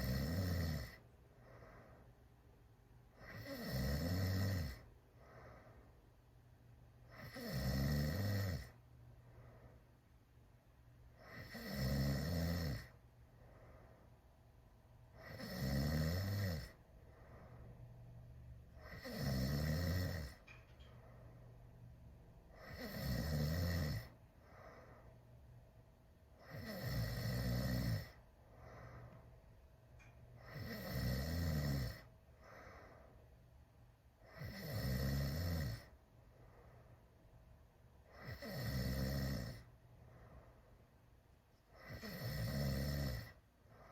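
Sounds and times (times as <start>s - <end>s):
loud open-mouth snoring: 0.0s - 1.0s, 3.2s - 4.8s, 7.1s - 8.8s, 11.2s - 13.0s, 15.2s - 16.8s, 18.8s - 20.4s, 22.6s - 24.2s, 26.4s - 28.2s, 30.4s - 32.1s, 34.3s - 35.9s, 38.1s - 39.7s, 41.8s - 43.4s
faint breathing: 0.8s - 3.6s, 4.6s - 6.4s, 8.6s - 10.2s, 12.8s - 15.5s, 16.6s - 19.1s, 24.0s - 25.5s, 28.0s - 30.8s, 32.0s - 34.6s, 35.7s - 37.4s, 39.5s - 42.1s, 43.2s - 43.9s.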